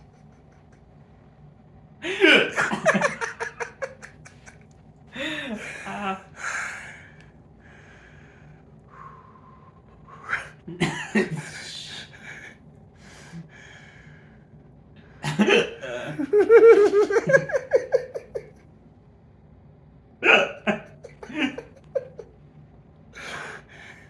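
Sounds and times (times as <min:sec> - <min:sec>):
woman laughing: 0:02.1 - 0:04.6, 0:15.8 - 0:18.5, 0:20.7 - 0:22.2.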